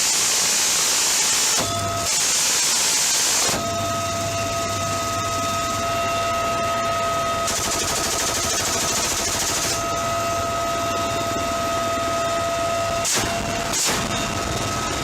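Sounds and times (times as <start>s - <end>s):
minigun firing rapid buzz: 7.4s - 10.0s, 13.0s - 15.0s.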